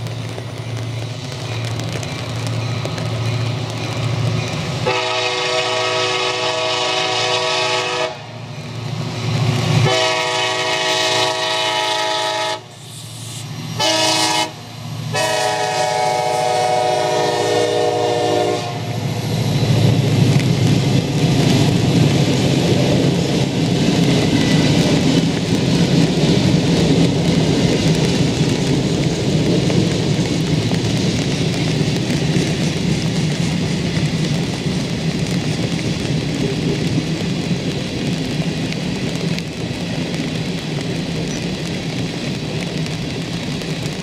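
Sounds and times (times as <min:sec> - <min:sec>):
train rumble: 0:00.0 - 0:44.0
locomotive air horn blasts: 0:04.8 - 0:08.3, 0:09.8 - 0:12.8, 0:13.8 - 0:19.0.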